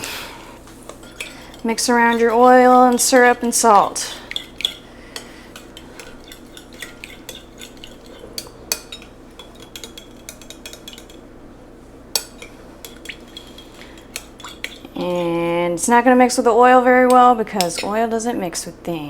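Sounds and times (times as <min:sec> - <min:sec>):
utensil clinking against bowl: 0:00.9 - 0:11.3, 0:12.1 - 0:15.5, 0:17.0 - 0:18.0.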